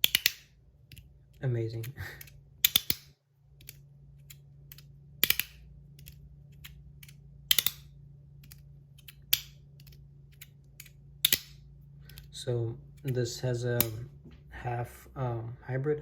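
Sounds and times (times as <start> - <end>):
metal slider clicking: 0.0 - 1.0, 2.2 - 12.2.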